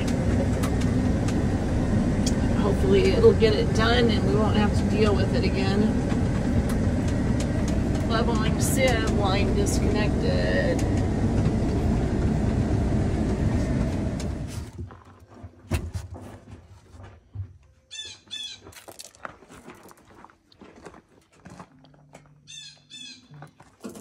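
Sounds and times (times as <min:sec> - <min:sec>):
loud vehicle engine running: 0:00.0 - 0:14.9
knocks and clicks: 0:05.9 - 0:09.6.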